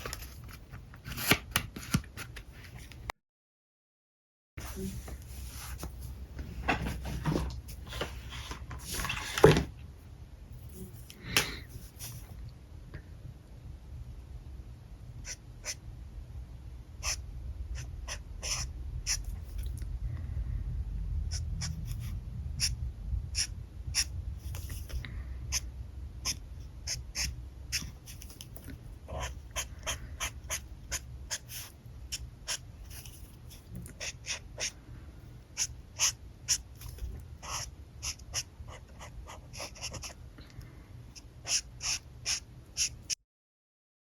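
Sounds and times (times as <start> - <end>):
marker scratching on paper: 17.0 - 17.2, 17.8 - 19.2, 23.4 - 25.6, 26.2 - 28.3, 29.1 - 33.2, 33.9 - 34.8, 35.6 - 36.7, 37.4 - 40.2, 41.2 - 43.1.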